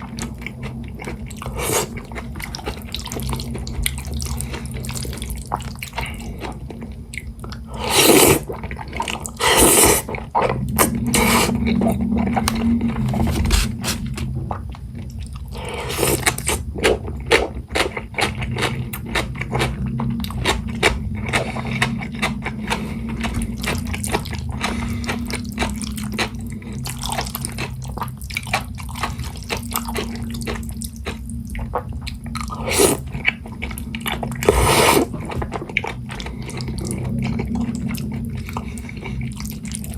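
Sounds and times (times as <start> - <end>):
wet chewing and smacking: 0.0 - 39.9
noodles slurped: 1.4 - 3.5, 7.7 - 10.2, 15.5 - 16.6, 32.4 - 33.3, 34.2 - 39.9.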